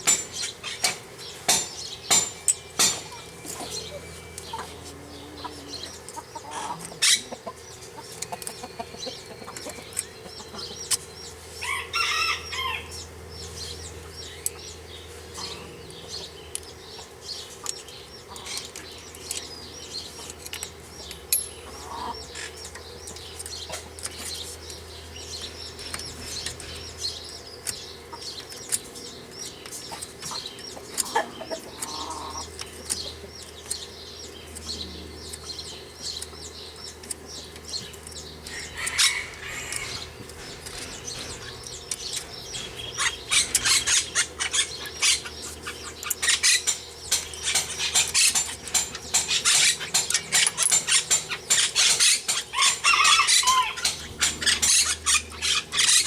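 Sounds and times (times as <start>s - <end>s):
small birds chirping: 0.0s - 56.0s
chickens clucking: 0.1s - 56.0s
sharp metal clinks: 21.3s - 22.0s, 46.1s - 55.4s.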